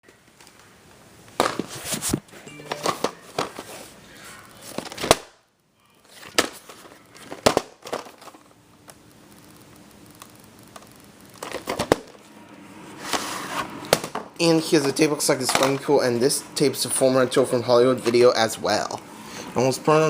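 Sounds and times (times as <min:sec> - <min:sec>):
plastic case crinkling and clattering: 0:06.1 - 0:08.5, 0:11.4 - 0:12.2.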